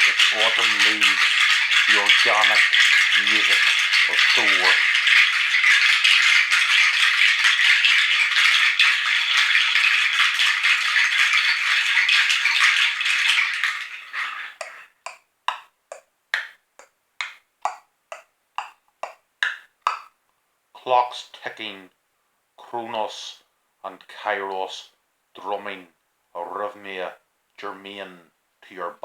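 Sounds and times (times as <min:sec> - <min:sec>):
sharp clicking strokes: 0:00.0 - 0:09.4
rattle shaken: 0:00.0 - 0:14.9.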